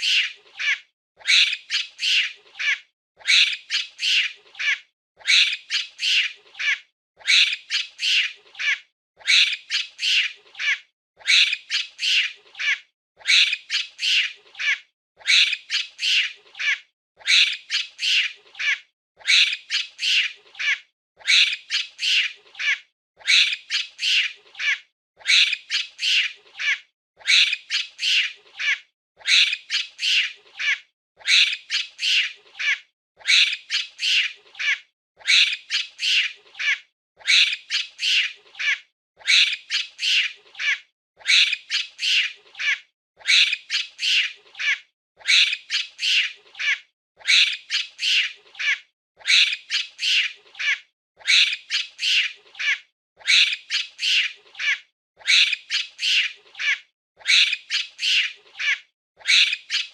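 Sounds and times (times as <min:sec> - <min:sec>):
monkey shrieking calls: 0:00.0 - 0:59.9.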